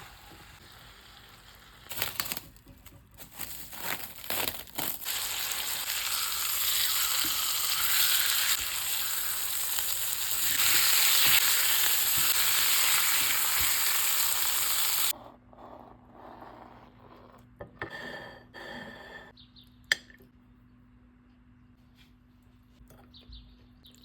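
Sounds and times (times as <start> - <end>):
steak sizzling in a pan: 5.0 - 15.1.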